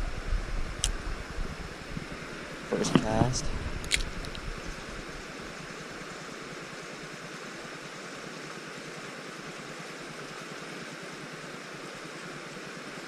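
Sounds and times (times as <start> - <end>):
flowing creek water: 0.8 - 13.0.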